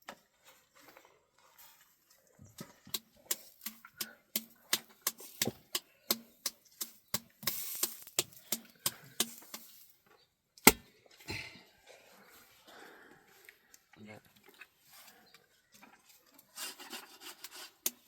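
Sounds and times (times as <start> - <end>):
chopping on wood: 10.6 - 10.8.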